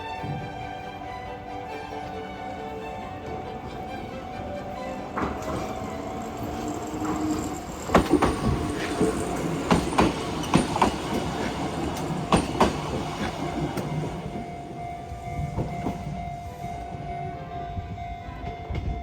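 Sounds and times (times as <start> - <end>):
train wheels clacking over rail joints: 5.0 - 14.5.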